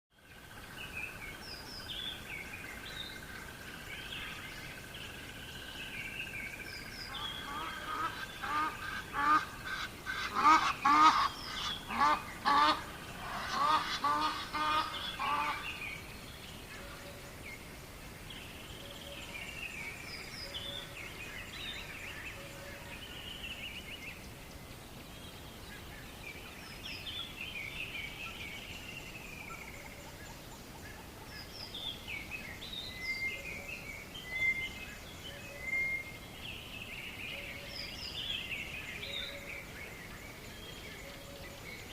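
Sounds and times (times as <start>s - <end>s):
faint steady hiss: 0.2s - 41.9s
harsh bird calls: 7.1s - 16.0s.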